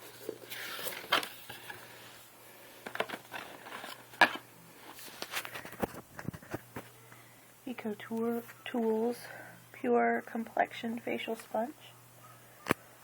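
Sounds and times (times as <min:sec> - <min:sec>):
cardboard packaging rustling: 0:00.0 - 0:06.9.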